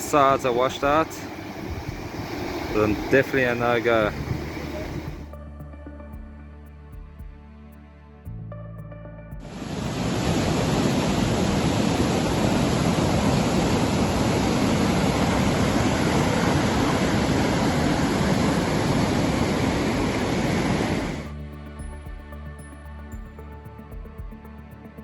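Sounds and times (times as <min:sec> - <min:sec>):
floodwater rushing: 0:00.0 - 0:05.3, 0:09.5 - 0:21.3.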